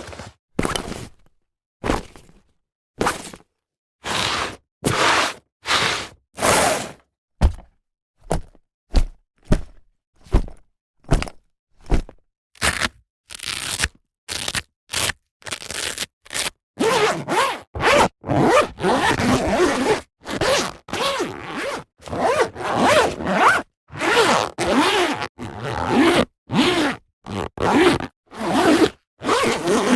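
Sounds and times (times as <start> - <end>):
canvas handling sounds: 0.0 - 1.1, 20.5 - 26.0
zipper pulled open and shut: 0.0 - 1.2, 4.0 - 7.0, 11.1 - 29.9.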